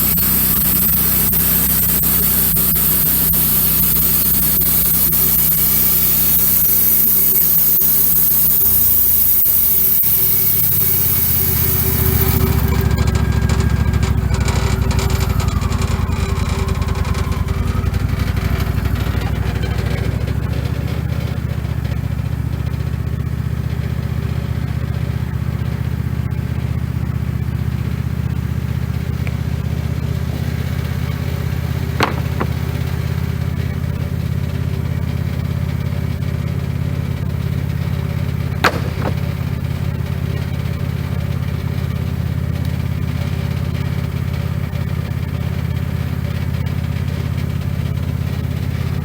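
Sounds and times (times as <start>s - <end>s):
sharp clicks: 0.0s - 12.9s, 32.0s - 32.7s, 38.6s - 39.5s
engine running steadily: 0.0s - 49.0s.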